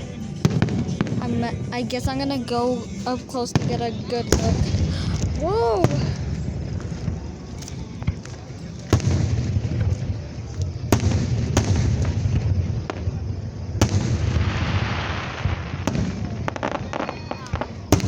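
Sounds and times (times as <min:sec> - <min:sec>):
crackling hiss: 0:00.0 - 0:18.0
low booming rumble: 0:03.6 - 0:08.3.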